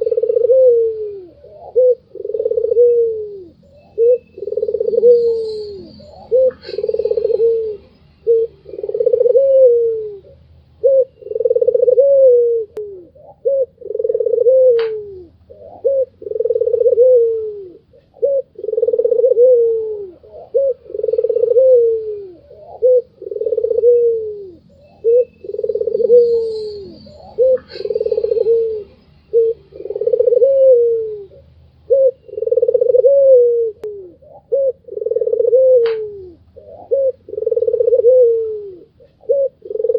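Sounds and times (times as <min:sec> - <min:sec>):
dove cooing: 0:00.0 - 0:39.9
faint high chirps: 0:03.6 - 0:08.4, 0:24.7 - 0:29.9.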